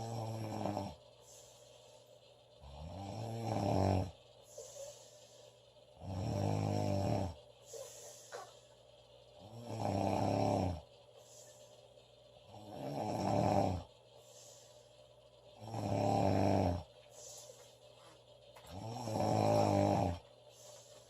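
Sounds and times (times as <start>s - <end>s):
woman snoring loudly: 0.0s - 1.0s, 2.6s - 4.1s, 6.0s - 7.4s, 9.4s - 10.8s, 12.5s - 13.9s, 15.6s - 16.9s, 18.7s - 20.2s.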